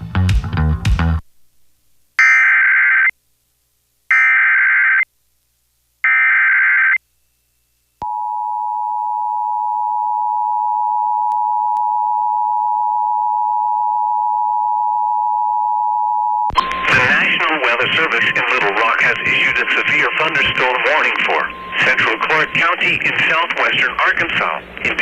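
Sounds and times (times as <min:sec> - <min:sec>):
two-tone attention signal: 0:16.2 - 0:23.1
screeching data tones: 0:16.5 - 0:24.2.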